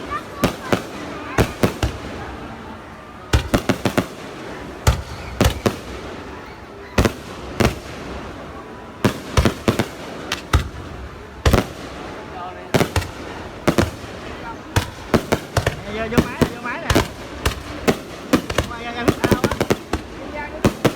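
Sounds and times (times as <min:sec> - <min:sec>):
fireworks bangs: 0:00.0 - 0:20.9.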